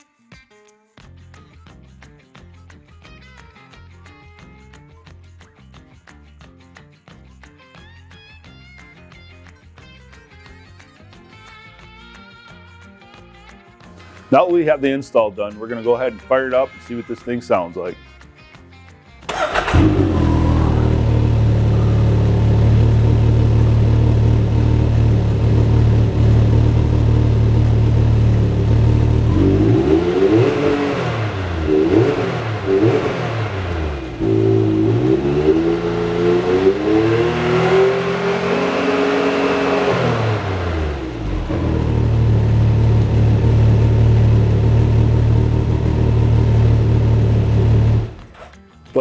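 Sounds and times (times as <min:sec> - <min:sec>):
turbocharged engine idling and revving: 0:19.2 - 0:48.4.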